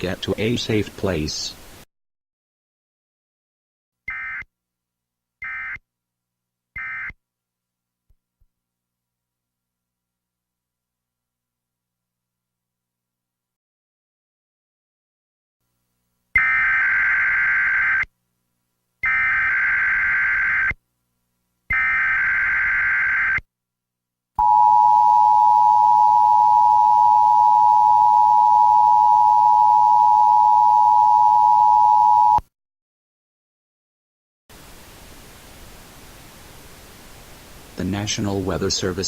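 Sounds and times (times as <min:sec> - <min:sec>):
two-tone attention signal: 0:24.4 - 0:32.4.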